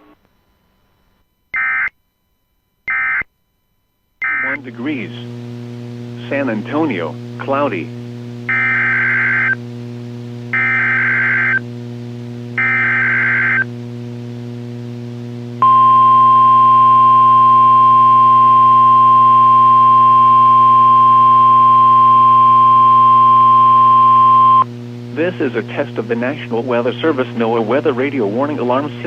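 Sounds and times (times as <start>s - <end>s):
warning alarm tone: 4.2s - 4.6s, 8.5s - 9.6s, 10.5s - 11.7s, 12.6s - 13.7s, 15.6s - 24.7s
low hum: 4.5s - 29.0s
buzzy warbling data bursts: 8.5s - 9.6s, 10.6s - 11.6s, 12.6s - 13.6s.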